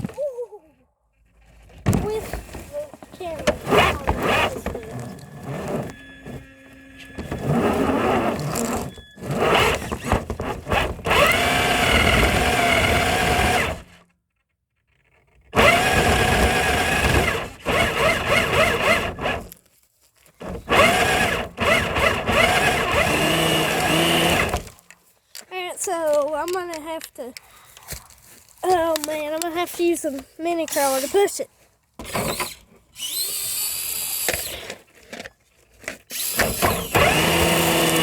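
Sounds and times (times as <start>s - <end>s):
electric motor whining: 3.4s - 14.0s, 15.6s - 19.6s, 20.4s - 24.8s, 32.2s - 34.8s, 36.1s - 38.0s.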